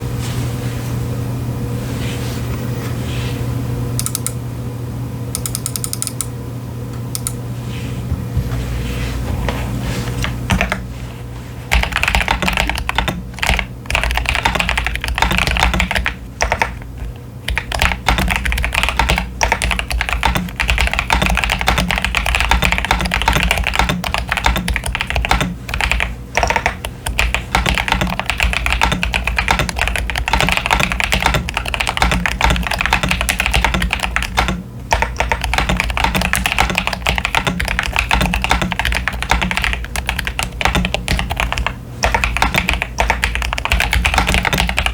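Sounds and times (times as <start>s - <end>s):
mechanical keyboard typing: 4.0s - 4.4s, 5.4s - 6.3s, 10.5s - 10.8s, 11.7s - 44.9s.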